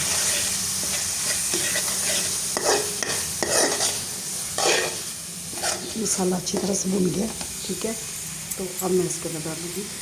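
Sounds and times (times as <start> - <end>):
spoon scraping a pan: 0.0 - 6.9
spices sizzling in oil: 0.0 - 10.0.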